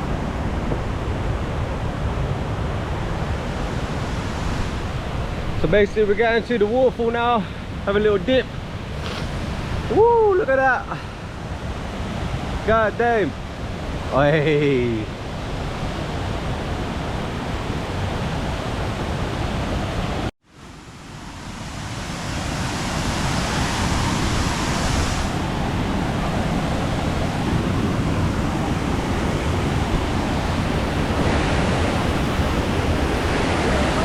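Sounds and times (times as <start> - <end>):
waterfall rushing: 21.4 - 34.0.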